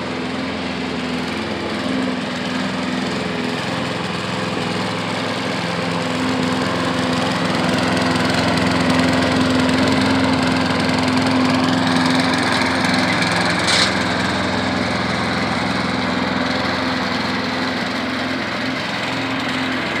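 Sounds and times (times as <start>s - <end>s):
lawn mower engine running: 0.0s - 20.0s.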